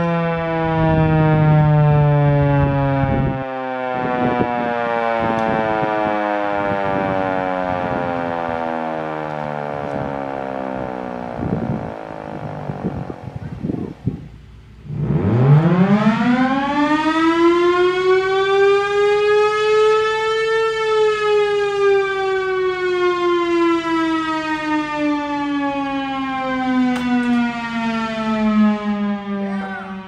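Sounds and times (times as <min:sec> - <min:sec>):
siren wailing: 0:00.0 - 0:14.2, 0:14.8 - 0:30.0
steady low hum: 0:09.4 - 0:19.0.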